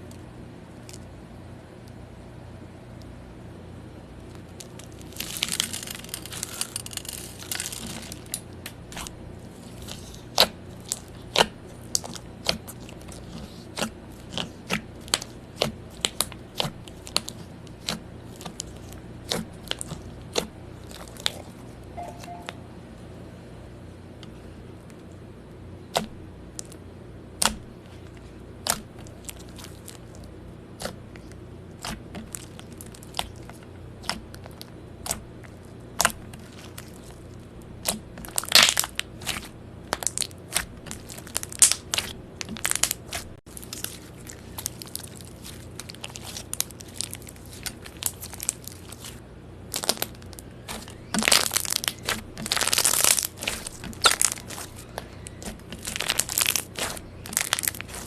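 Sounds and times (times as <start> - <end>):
slime popping and crackling: 4.4 - 22.4, 37.8 - 58.0.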